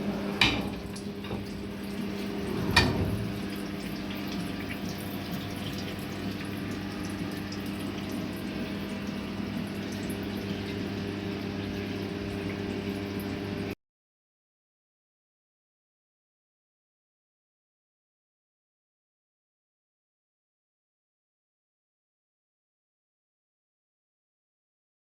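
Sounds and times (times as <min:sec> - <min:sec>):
milling machine hum: 0:00.0 - 0:13.7
coolant splashing: 0:00.0 - 0:13.8.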